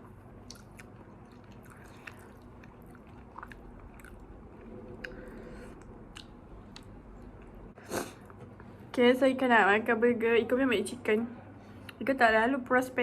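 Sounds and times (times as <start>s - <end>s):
person chewing food: 0.0s - 8.4s.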